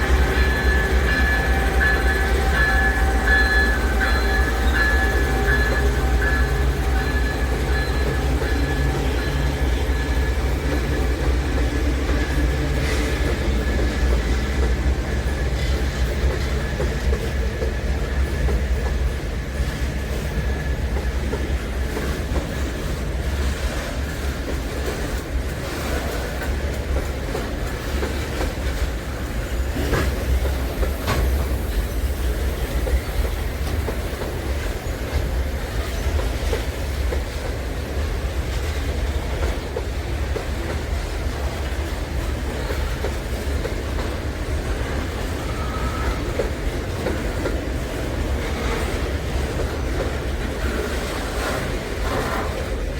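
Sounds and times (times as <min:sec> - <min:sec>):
diesel locomotive hum: 0:00.0 - 0:52.9
rumble of freight wagons: 0:00.0 - 0:52.9
wheel squeal: 0:44.8 - 0:46.5.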